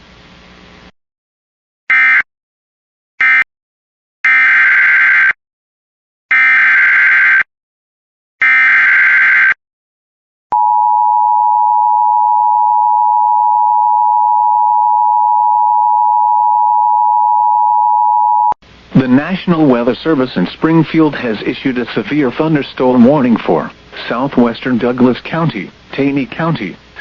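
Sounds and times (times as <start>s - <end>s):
steady two-tone attention signal: 10.6s - 18.6s.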